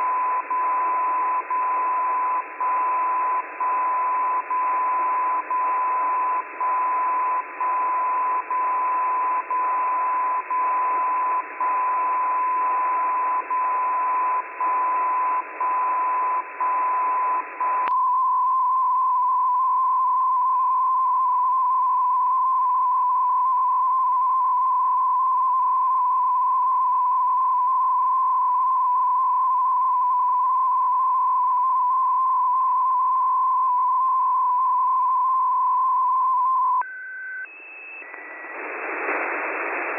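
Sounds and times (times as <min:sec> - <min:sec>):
click: 0:17.8 - 0:18.0
radio beat tone: 0:37.5 - 0:39.9
radio hiss: 0:37.5 - 0:39.9.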